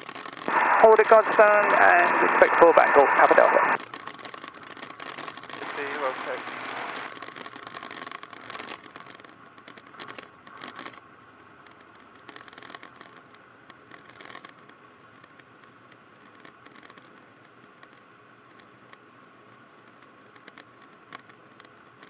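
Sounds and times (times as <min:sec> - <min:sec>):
short crackles and scratches: 0:00.0 - 0:22.0
aircraft engine: 0:00.3 - 0:03.8
cockpit hiss: 0:00.5 - 0:03.8, 0:05.6 - 0:07.1.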